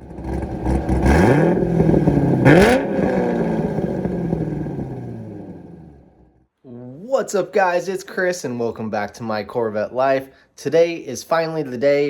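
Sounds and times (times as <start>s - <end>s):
car engine revving and idling: 0.0s - 6.4s.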